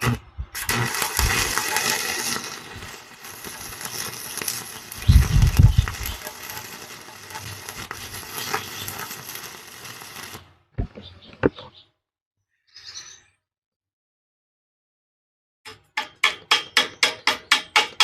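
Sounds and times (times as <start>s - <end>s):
welding arc crackling: 0.0s - 10.6s.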